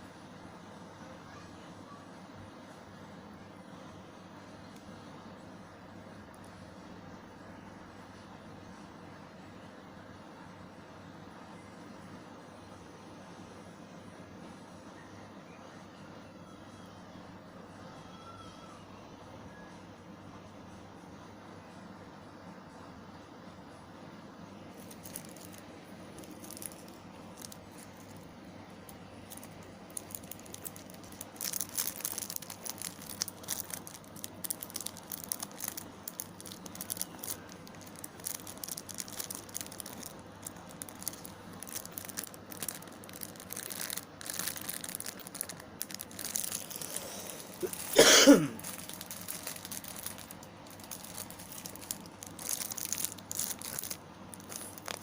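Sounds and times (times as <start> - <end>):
plastic packaging crinkling: 24.7 - 55.0
loud short cough-like sound: 47.9 - 48.6.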